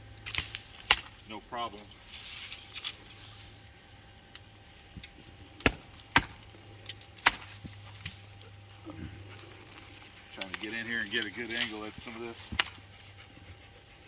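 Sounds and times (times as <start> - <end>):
blade chopping tree branches: 0.0 - 3.6, 4.8 - 8.5, 9.6 - 13.0.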